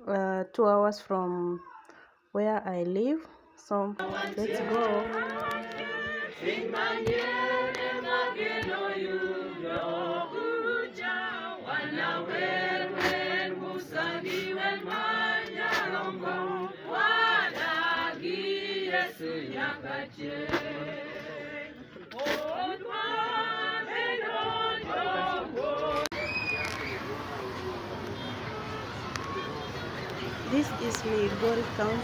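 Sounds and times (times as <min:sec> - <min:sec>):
choir singing in harmony: 0:04.0 - 0:26.1.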